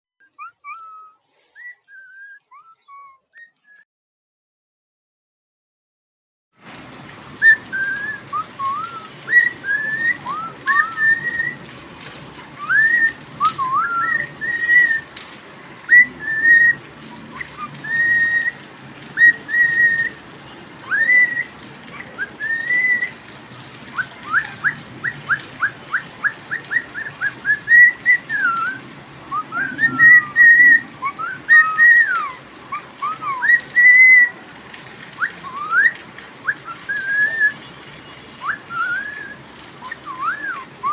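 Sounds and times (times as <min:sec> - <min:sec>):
cockatiel whistling: 0:00.2 - 0:03.8, 0:07.4 - 0:11.6, 0:12.6 - 0:15.1, 0:15.9 - 0:18.6, 0:19.2 - 0:20.2, 0:20.8 - 0:23.2, 0:23.9 - 0:34.3, 0:35.2 - 0:37.6, 0:38.4 - 0:40.9.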